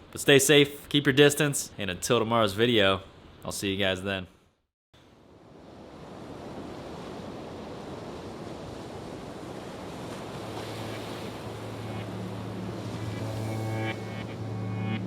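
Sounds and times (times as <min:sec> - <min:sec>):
low steady hum: 0:10.5 - 0:15.0
steady rushing noise: 0:10.7 - 0:15.0.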